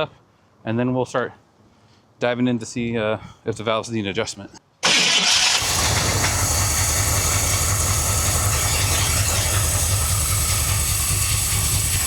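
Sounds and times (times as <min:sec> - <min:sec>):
car engine idling: 0:04.8 - 0:12.0.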